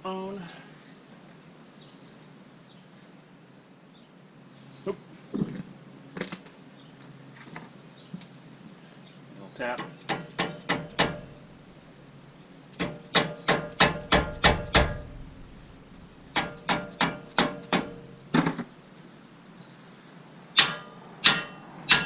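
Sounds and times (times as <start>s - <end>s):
hammer striking metal: 9.8s - 11.5s, 12.8s - 18.6s, 20.6s - 22.0s.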